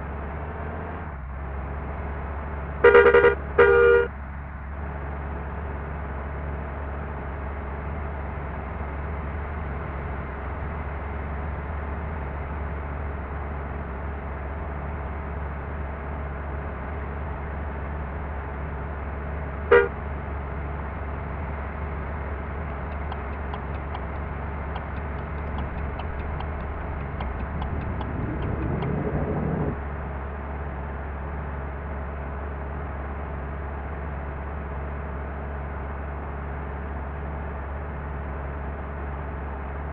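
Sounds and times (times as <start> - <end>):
bus engine drone: 0.0 - 39.9
road noise: 0.0 - 39.9
bus horn toot: 2.8 - 4.2, 19.7 - 20.0
rising engine sound: 21.0 - 31.1.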